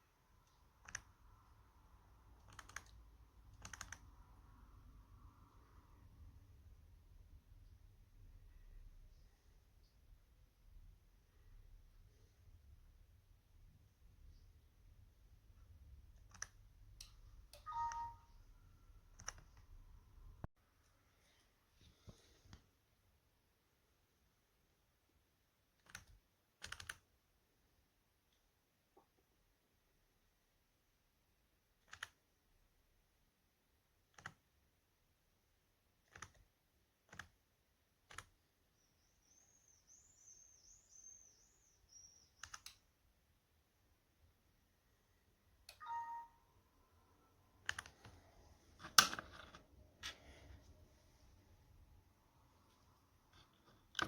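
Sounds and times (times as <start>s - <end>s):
computer keyboard or mouse clicks: 0.5s - 1.2s, 2.4s - 4.2s, 16.1s - 18.1s, 19.1s - 19.8s, 25.8s - 27.1s, 31.8s - 32.2s, 34.1s - 34.5s, 36.0s - 36.5s, 37.1s - 37.4s, 38.1s - 38.4s, 42.4s - 42.8s, 47.6s - 48.2s
sharp clicks: 2.4s - 4.1s, 42.3s - 42.8s
faint high warbling chirp: 17.6s - 18.4s, 38.7s - 42.4s, 45.8s - 46.5s
short electronic beep: 17.6s - 18.4s, 45.8s - 46.5s.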